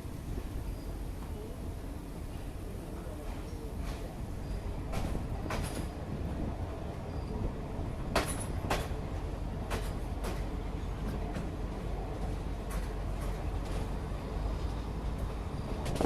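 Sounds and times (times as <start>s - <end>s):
train rumbling along track: 0.0s - 16.0s
wheels clacking over rail joints: 3.2s - 6.1s, 8.0s - 11.6s, 12.3s - 14.0s.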